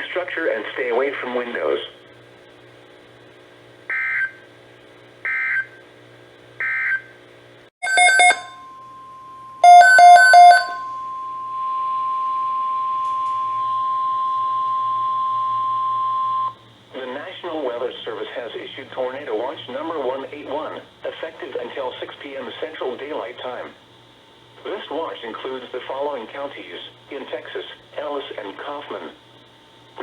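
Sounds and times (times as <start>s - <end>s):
faint hum: 0.0s - 30.0s
steady warning alarm tone: 7.8s - 16.6s.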